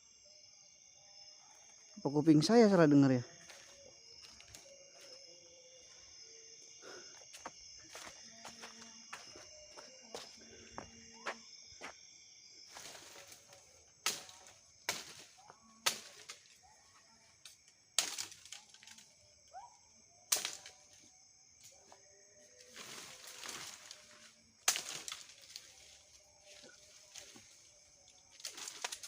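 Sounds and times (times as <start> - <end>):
high insect drone: 0.0 - 29.0
twigs and leaves crunching: 3.4 - 6.2, 6.9 - 12.0, 12.6 - 16.6, 22.6 - 29.0.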